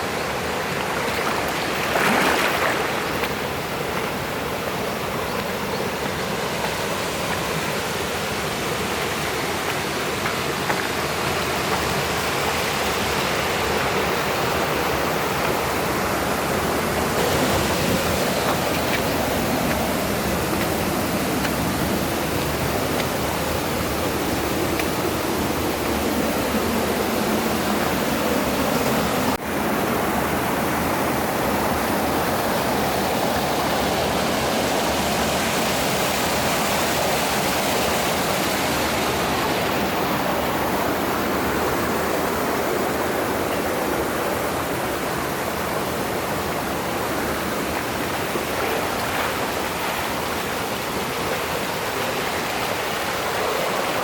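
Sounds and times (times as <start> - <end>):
stream rushing over rocks: 0.0 - 54.0.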